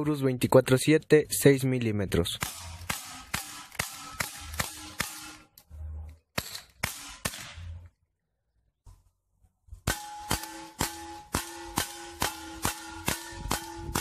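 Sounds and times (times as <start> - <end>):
airsoft pistol shots cracking: 2.4 - 5.5, 6.4 - 7.8, 9.8 - 14.0.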